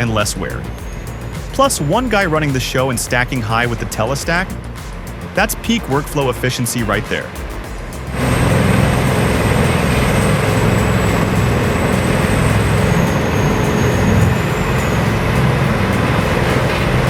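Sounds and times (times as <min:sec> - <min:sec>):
high-pitched whine: 0:00.0 - 0:17.0
wood chipper running: 0:08.0 - 0:17.0.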